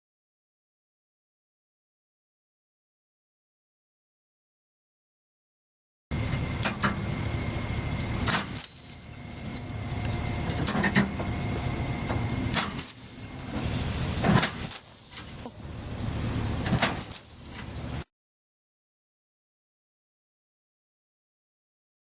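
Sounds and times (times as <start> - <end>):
vehicle engine rumbling: 6.1 - 18.1
metallic clanks and knocks: 10.5 - 11.3.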